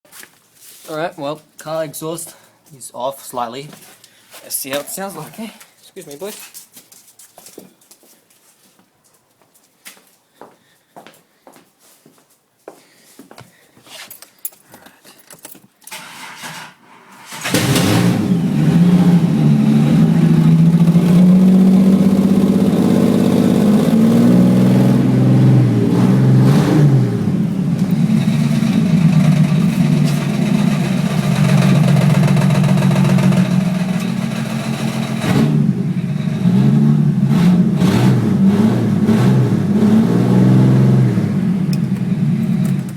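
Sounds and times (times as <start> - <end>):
car engine starting and running: 15.9 - 42.9
engine rattle: 25.9 - 39.9, 41.4 - 42.9.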